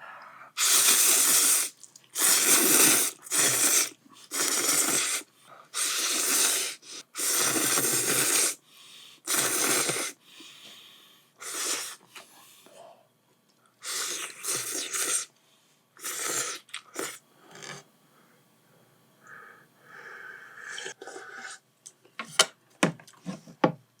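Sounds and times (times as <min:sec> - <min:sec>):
noodles being slurped: 0:00.6 - 0:08.6, 0:09.3 - 0:10.2, 0:11.4 - 0:12.0, 0:13.8 - 0:15.3, 0:16.0 - 0:17.8.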